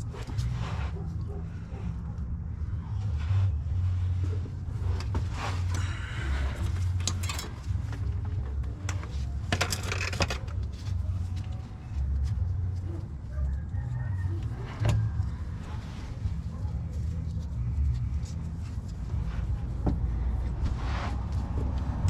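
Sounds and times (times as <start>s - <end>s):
low rumble: 0.0s - 22.0s
metal tools clinking: 6.5s - 8.0s, 8.9s - 10.7s.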